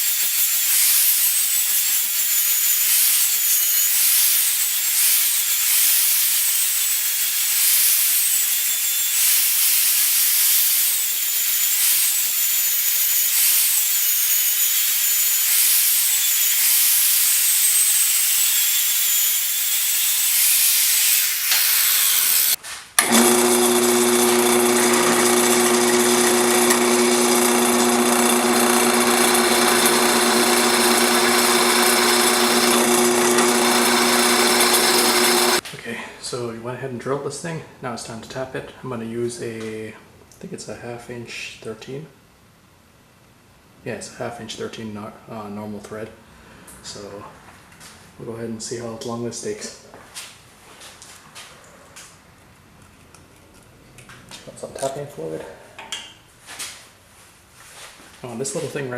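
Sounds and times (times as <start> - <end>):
angle grinder grinding steel: 0.0 - 35.6
drill drilling through plate: 0.0 - 35.6.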